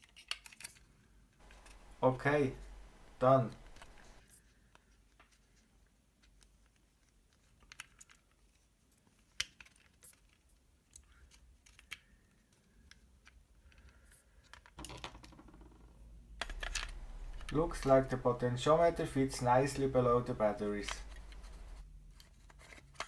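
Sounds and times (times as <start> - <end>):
parts scraping: 1.4 - 4.2, 16.4 - 23.0
plastic parts clicking: 2.6 - 4.2, 9.2 - 15.3, 16.4 - 18.2.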